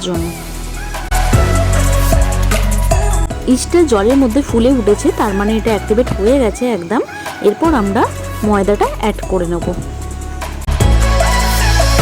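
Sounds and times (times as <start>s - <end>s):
melody layer: 3.3s - 10.6s
low bass notes: 7.7s - 12.0s.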